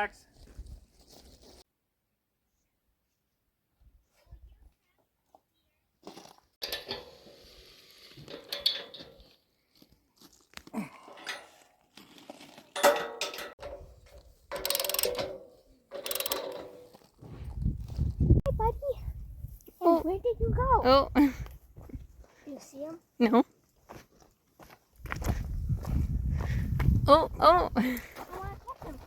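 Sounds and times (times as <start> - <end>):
steel parts clanking and rattling: 6.6 - 7.4, 8.2 - 9.3, 11.1 - 11.7, 12.8 - 17.2.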